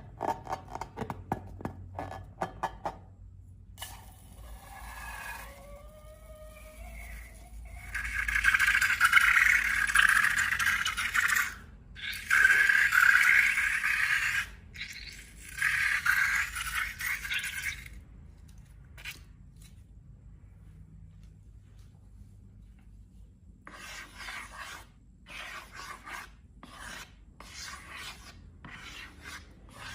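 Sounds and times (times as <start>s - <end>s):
slime scraping and rubbing: 23.7s - 29.9s.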